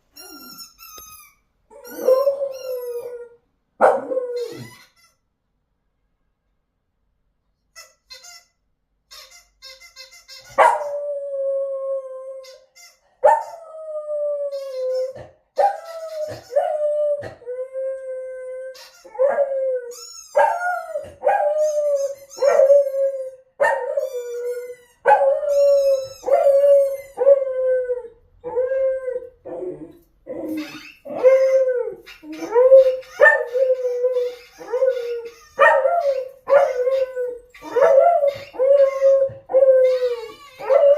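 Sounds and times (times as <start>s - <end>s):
dog howling and whining: 1.7s - 3.4s, 4.0s - 4.7s, 13.4s - 40.9s.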